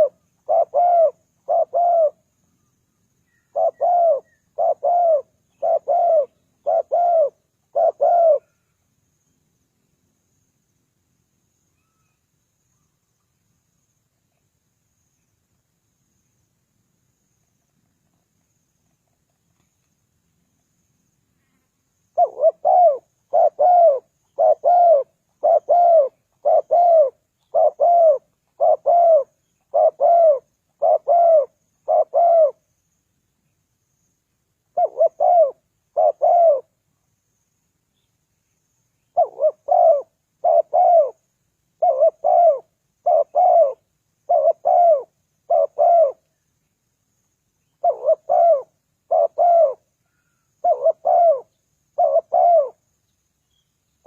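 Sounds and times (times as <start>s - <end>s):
dove cooing: 0.0s - 2.2s, 3.4s - 8.6s, 22.2s - 32.6s, 34.7s - 36.7s, 39.1s - 41.2s, 41.8s - 46.3s, 47.7s - 52.8s.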